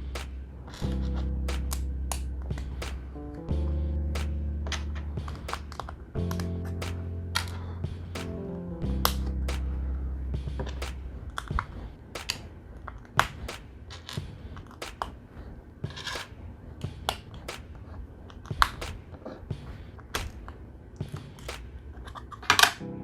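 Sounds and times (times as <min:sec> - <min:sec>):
background music: 0:00.0 - 0:12.5, 0:22.4 - 0:23.0.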